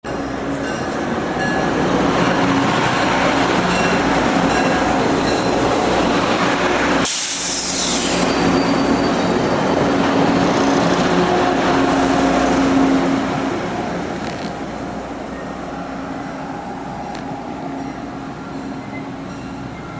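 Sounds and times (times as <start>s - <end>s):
rail noise: 0.0s - 19.9s
diesel railcar engine drone: 0.1s - 19.9s
high hiss: 7.0s - 8.4s.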